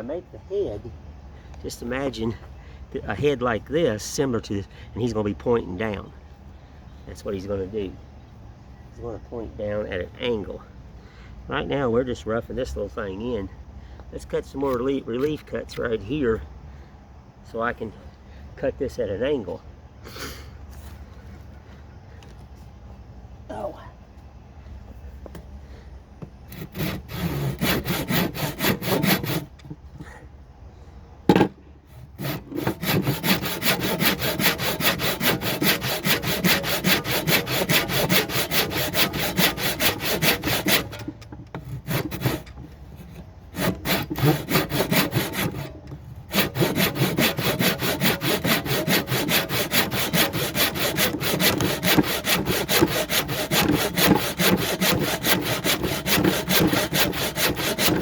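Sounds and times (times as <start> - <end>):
hand saw cutting wood: 26.5 - 30.2, 31.3 - 58.0.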